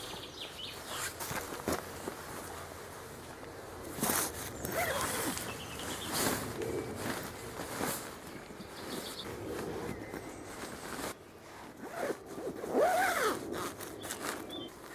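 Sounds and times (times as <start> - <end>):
fabric rustling: 0.7 - 14.9
zip drawn in short strokes: 11.8 - 14.4.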